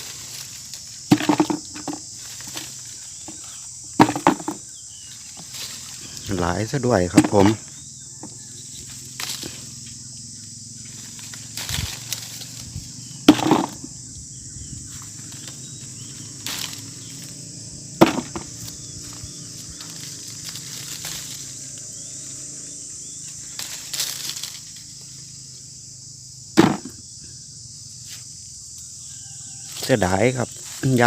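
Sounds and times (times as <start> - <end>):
hands handling mangoes: 0.0 - 9.7
insects buzzing: 0.0 - 31.0.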